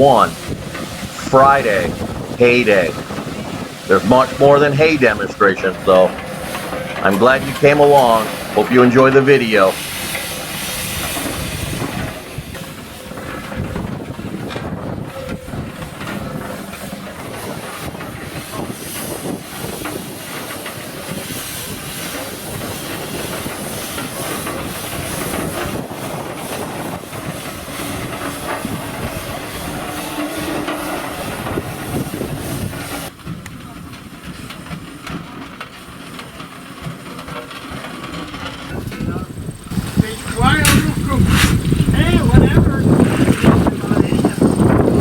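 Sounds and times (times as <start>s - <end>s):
steam hissing: 0.0s - 33.1s, 35.9s - 45.0s.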